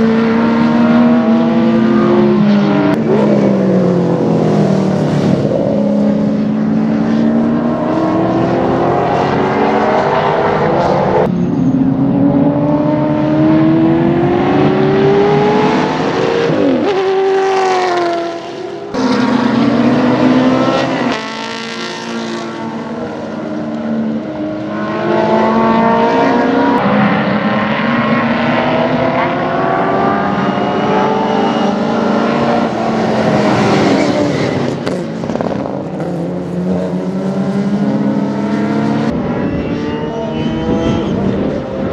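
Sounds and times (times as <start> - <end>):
racing car engine accelerating: 0.0 - 41.9.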